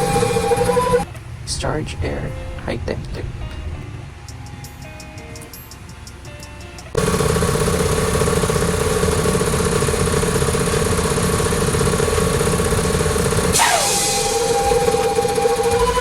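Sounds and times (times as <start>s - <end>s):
air compressor running: 0.0s - 1.1s, 6.9s - 16.0s
burst of noise with falling tone: 8.6s - 16.0s.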